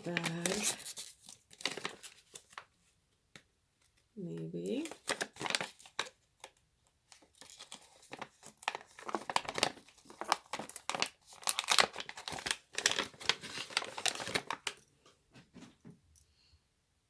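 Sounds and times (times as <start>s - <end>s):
plastic bag crinkling and tearing: 0.0s - 2.7s, 4.6s - 14.8s.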